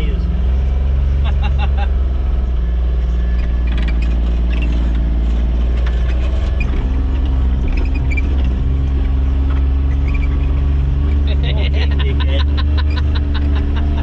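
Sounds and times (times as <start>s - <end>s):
vehicle engine rumbling: 0.0s - 14.0s
short high squeaks: 3.1s - 11.2s.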